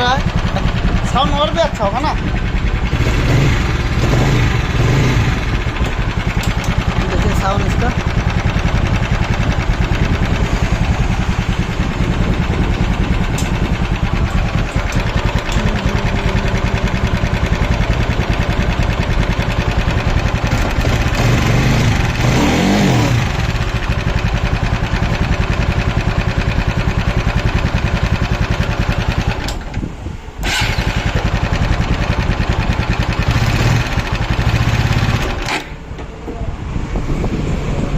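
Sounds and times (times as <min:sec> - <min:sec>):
motorcycle engine revving: 0:00.0 - 0:35.8
engine tapping: 0:00.0 - 0:36.5.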